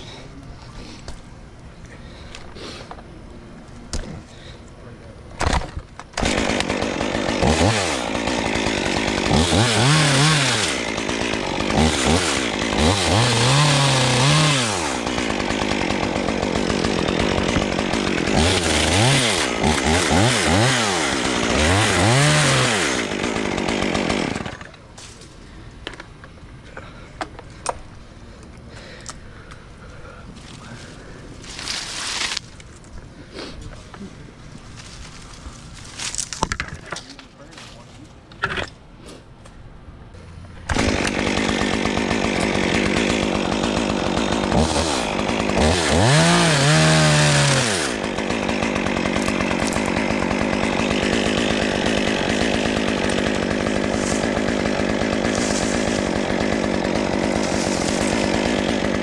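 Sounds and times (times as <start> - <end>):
chainsaw revving: 6.2 - 24.7, 40.7 - 59.0.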